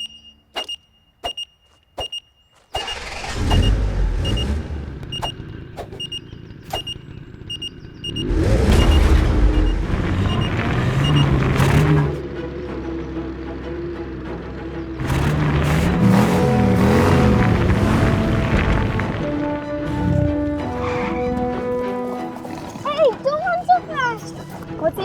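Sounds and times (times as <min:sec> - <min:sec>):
electronic beeping in pairs: 0:00.0 - 0:11.6.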